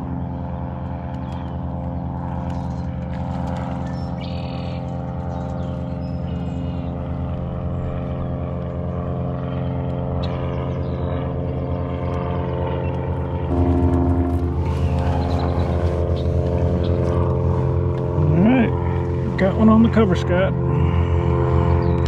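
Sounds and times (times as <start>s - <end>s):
steady motor hum: 0.0s - 22.0s
bird chirps: 14.6s - 17.2s.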